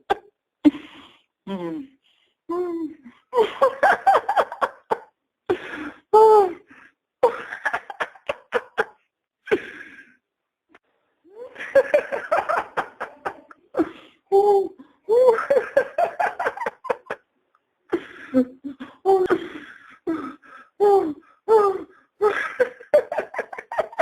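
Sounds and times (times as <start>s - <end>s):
man laughing heartily: 3.3s - 5.9s, 7.2s - 9.8s, 11.4s - 14.0s, 15.1s - 17.2s, 21.6s - 24.0s.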